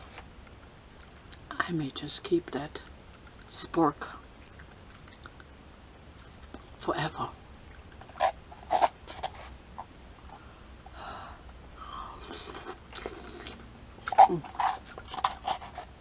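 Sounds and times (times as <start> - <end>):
person chewing noodles: 12.2 - 16.0.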